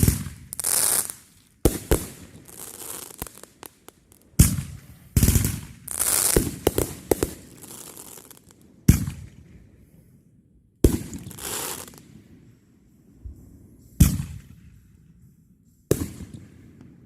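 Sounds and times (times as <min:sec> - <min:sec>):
fireworks bangs: 0:00.0 - 0:09.4
fireworks crackling hiss: 0:00.0 - 0:10.2, 0:10.8 - 0:15.0.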